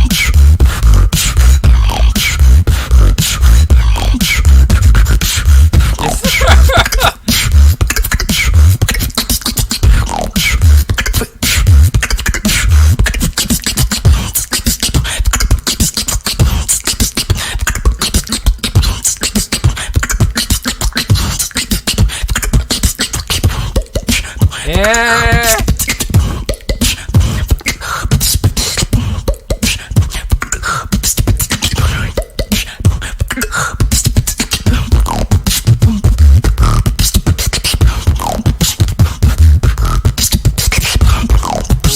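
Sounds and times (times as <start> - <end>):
woman beatboxing: 0.0 - 41.9
pitched vocal tone: 5.7 - 8.0, 24.5 - 25.7, 41.4 - 41.9.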